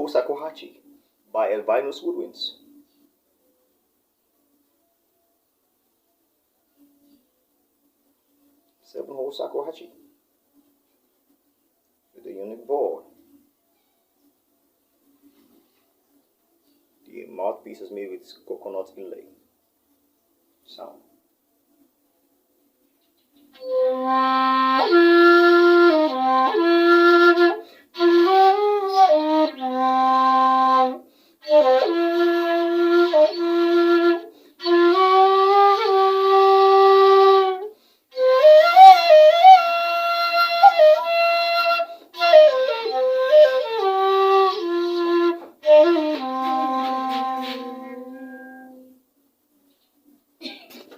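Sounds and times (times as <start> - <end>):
bamboo flute slow melody: 23.5 - 49.0.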